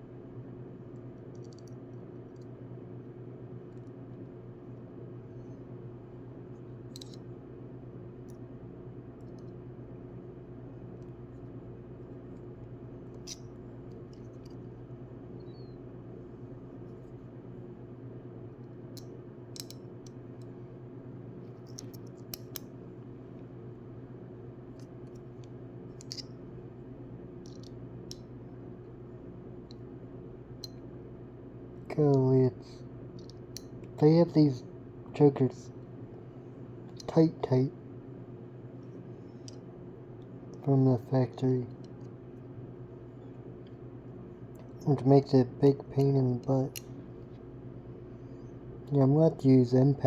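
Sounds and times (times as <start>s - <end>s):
steady low hum: 0.0s - 50.0s
clicks of tools being handled: 6.9s - 7.2s, 19.0s - 20.5s, 21.5s - 22.7s, 24.8s - 26.3s, 27.4s - 28.2s
small metal tools clicking: 7.0s - 7.2s, 19.6s - 19.8s, 21.6s - 22.6s, 26.0s - 26.3s.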